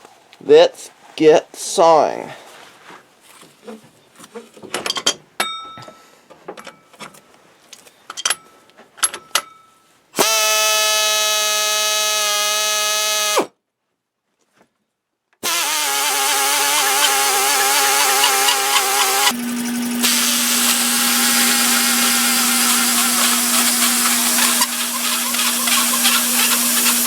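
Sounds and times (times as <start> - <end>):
drill clicks and knocks: 10.2 - 13.5, 15.4 - 19.4, 20.0 - 27.0
drill motor whine: 10.2 - 13.5, 15.4 - 27.0
hole saw squealing into steel: 15.4 - 19.4, 20.0 - 27.0.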